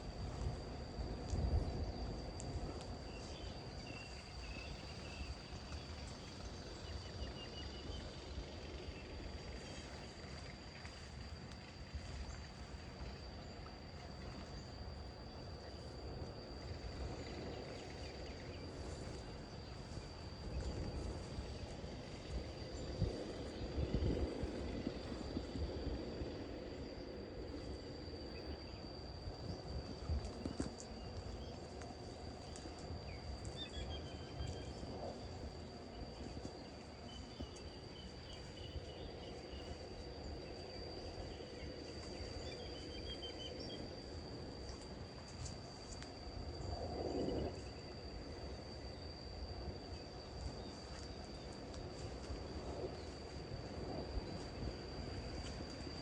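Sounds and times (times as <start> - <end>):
high-pitched insect drone: 0.0 - 56.0.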